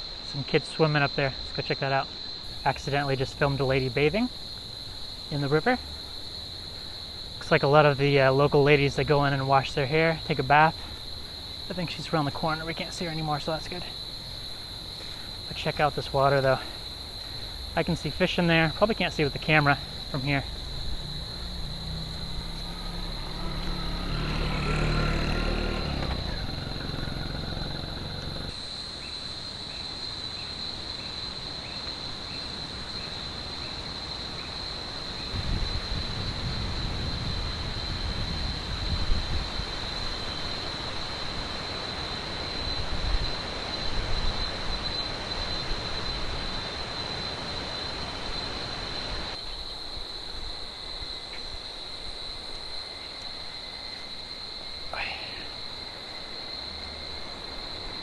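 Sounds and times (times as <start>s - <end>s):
insects droning: 0.0s - 58.0s
river water rushing: 46.7s - 49.4s.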